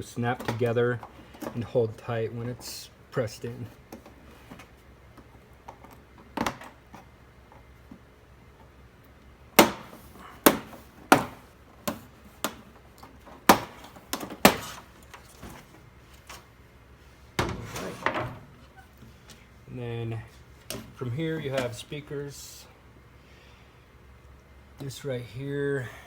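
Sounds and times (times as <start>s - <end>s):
plastic parts clicking and snapping: 9.6s - 15.6s.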